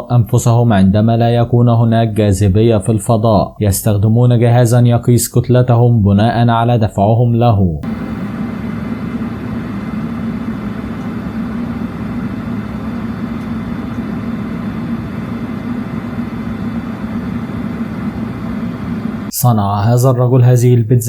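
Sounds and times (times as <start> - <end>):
ventilation fans humming: 0.0 - 21.0.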